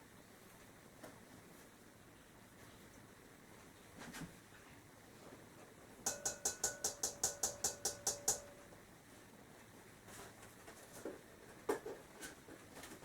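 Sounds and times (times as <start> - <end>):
metal spoon clinking bowl: 6.1 - 8.7.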